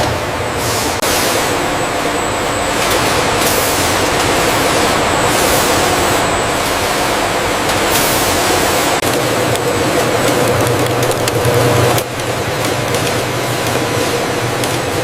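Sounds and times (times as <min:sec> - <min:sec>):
dense machinery hiss: 0:00.6 - 0:09.0.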